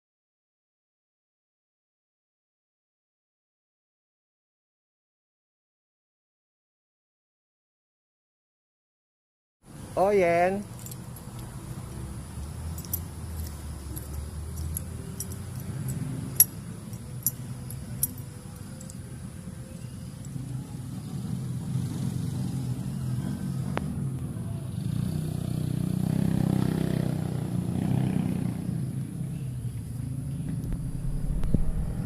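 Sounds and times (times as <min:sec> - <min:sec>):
vehicle engine rumbling: 0:09.7 - 0:32.0.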